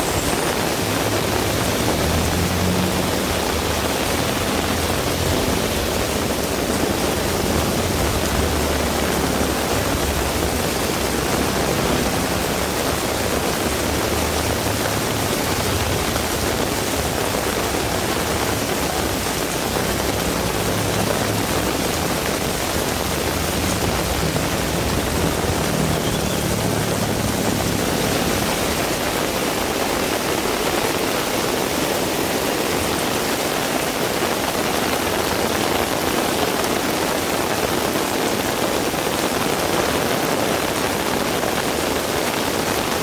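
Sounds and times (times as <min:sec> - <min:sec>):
heavy rain hissing: 0:00.0 - 0:43.0.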